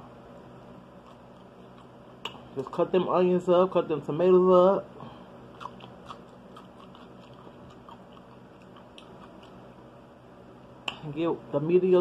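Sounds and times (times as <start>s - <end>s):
person chewing food: 0.9s - 2.8s, 5.4s - 9.9s
wet mouth clicks: 1.0s - 2.8s, 5.6s - 9.6s.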